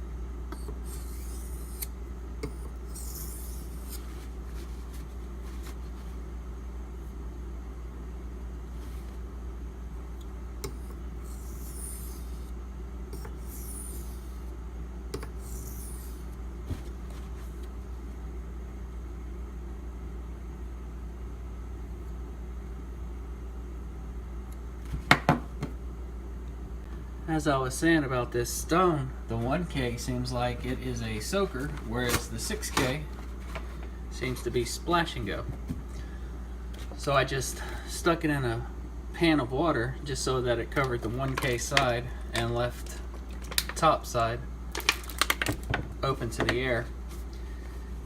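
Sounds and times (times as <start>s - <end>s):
steady low hum: 0.0s - 48.0s
knife scraping on whetstone: 0.6s - 4.1s, 10.6s - 12.5s, 13.2s - 14.4s, 15.2s - 16.2s.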